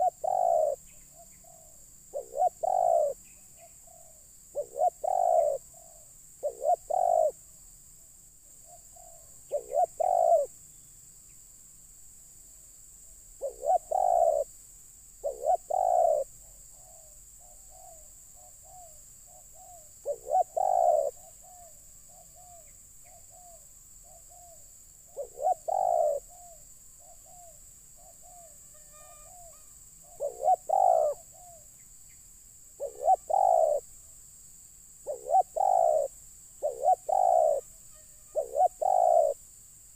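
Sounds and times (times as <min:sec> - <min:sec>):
dove cooing: 0:00.0 - 0:03.2, 0:03.8 - 0:07.4, 0:08.7 - 0:10.5, 0:13.4 - 0:14.5, 0:15.2 - 0:28.6, 0:29.3 - 0:31.7, 0:32.8 - 0:33.8, 0:35.1 - 0:37.7, 0:38.3 - 0:39.4.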